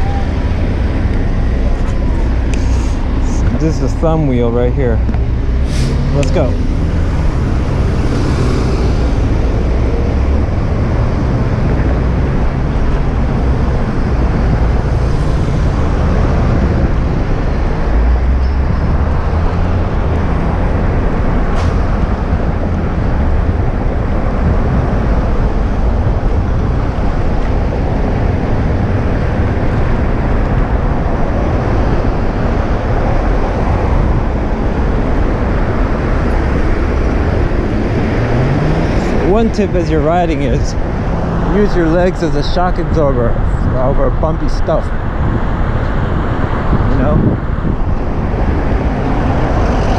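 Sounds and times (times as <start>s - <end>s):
road and traffic noise: 0.0s - 49.9s
wind rushing on microphone: 0.0s - 49.9s.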